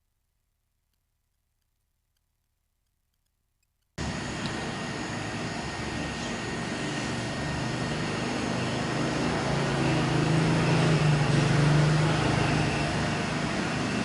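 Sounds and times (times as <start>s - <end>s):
machine whooshing with low hum: 4.0s - 14.0s.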